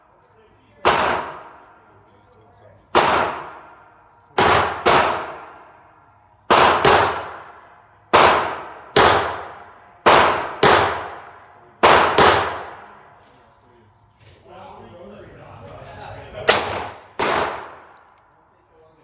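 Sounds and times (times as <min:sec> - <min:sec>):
revolver shots echoing: 0:00.9 - 0:01.6, 0:03.0 - 0:03.8, 0:04.4 - 0:05.8, 0:16.5 - 0:18.0.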